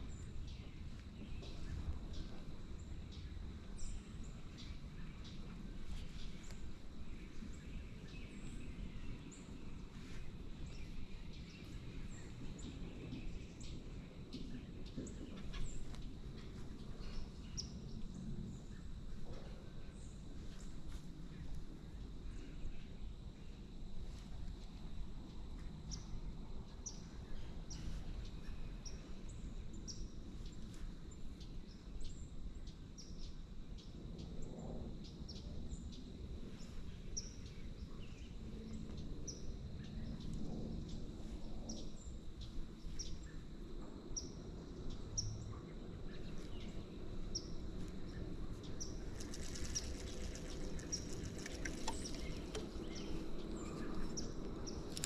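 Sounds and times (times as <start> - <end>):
low outdoor rumble: 0.0 - 55.0
small bird chirping: 46.1 - 55.0.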